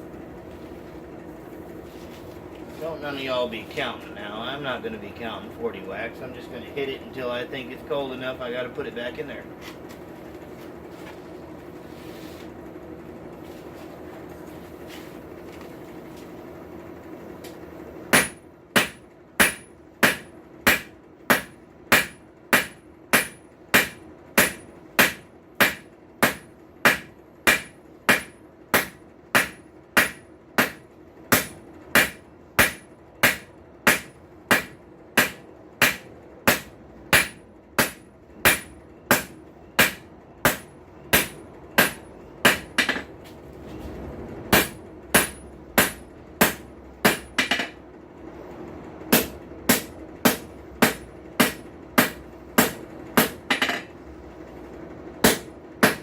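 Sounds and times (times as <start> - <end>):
hammer ringing on anvil: 31.4 - 43.1.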